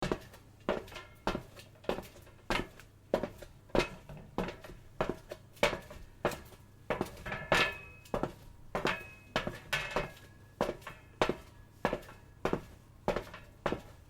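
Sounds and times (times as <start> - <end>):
footsteps on metal: 0.0 - 14.0.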